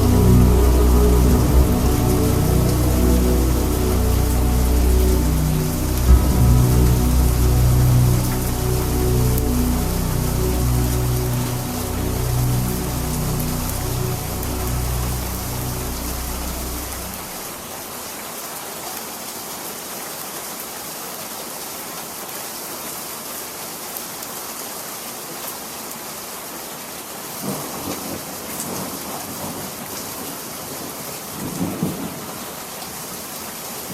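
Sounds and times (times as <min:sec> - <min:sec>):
song playing: 0:00.0 - 0:17.9
thunder rumbling: 0:00.0 - 0:17.9
rain hiss: 0:00.0 - 0:33.9.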